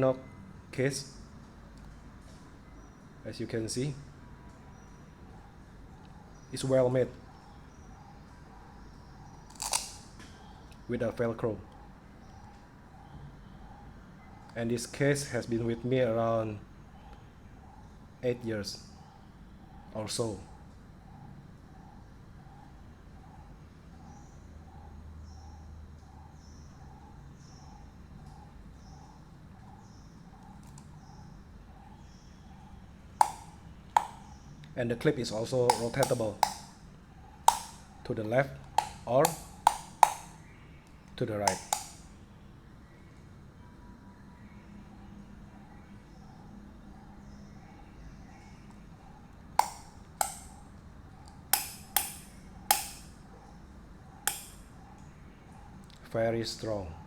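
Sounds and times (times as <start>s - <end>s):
metal belt clip snapping: 9.5s - 10.1s, 33.2s - 34.3s, 35.7s - 36.8s, 37.5s - 37.9s, 38.7s - 40.4s, 41.4s - 42.1s, 49.6s - 50.6s, 51.6s - 53.2s, 54.3s - 54.6s
sharp click: 33.2s - 34.4s, 35.7s - 36.8s, 37.5s - 37.9s, 38.7s - 40.4s, 41.4s - 42.1s, 49.6s - 50.6s, 51.2s - 53.2s, 54.3s - 54.6s.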